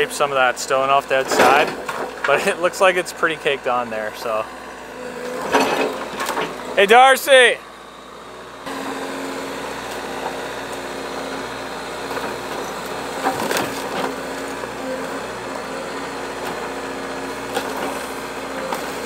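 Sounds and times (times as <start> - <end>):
excavator engine running: 0.0 - 19.0
wood cracking and splintering: 12.1 - 14.7.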